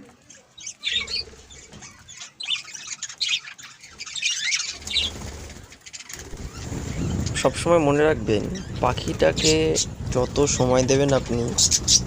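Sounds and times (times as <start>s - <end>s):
budgerigar chirping and squawking: 0.3s - 7.4s
low rumble: 6.2s - 12.0s.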